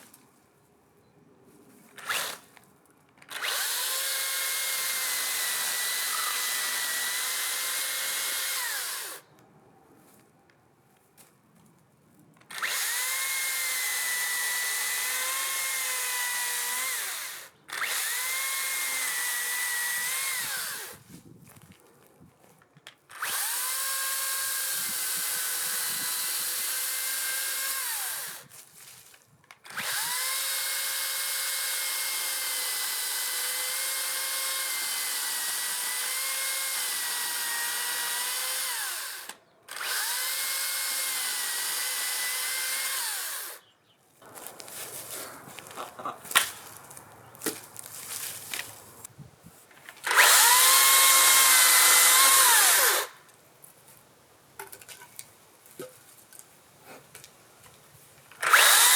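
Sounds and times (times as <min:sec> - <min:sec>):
electric chainsaw whining: 0:02.0 - 0:02.5, 0:03.3 - 0:09.2, 0:12.5 - 0:21.0, 0:23.1 - 0:28.5, 0:29.6 - 0:43.6, 0:50.0 - 0:53.3, 0:58.4 - 0:58.9
chainsaw chain hissing: 0:50.0 - 0:53.3, 0:58.4 - 0:58.9.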